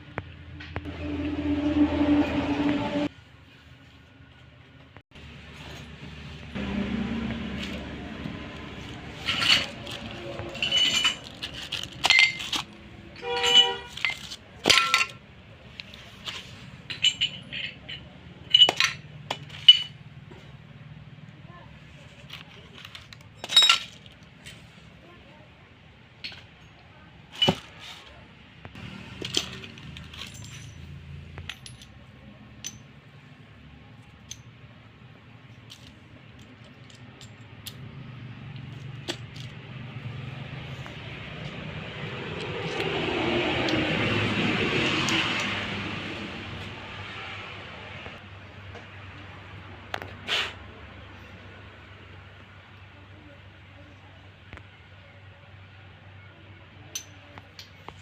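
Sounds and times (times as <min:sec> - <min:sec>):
metal parts and tools clinking: 0:07.6 - 0:20.6, 0:22.0 - 0:24.6, 0:26.2 - 0:28.1, 0:28.8 - 0:40.0, 0:56.9 - 0:58.0.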